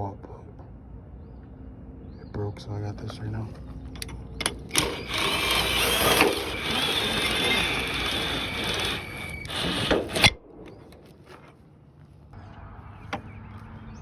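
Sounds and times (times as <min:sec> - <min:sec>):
cordless drill running: 0:04.4 - 0:10.4.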